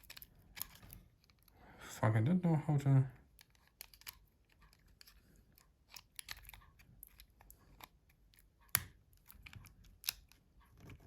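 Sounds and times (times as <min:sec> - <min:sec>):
plastic parts clicking: 0:00.0 - 0:01.6, 0:03.3 - 0:11.0.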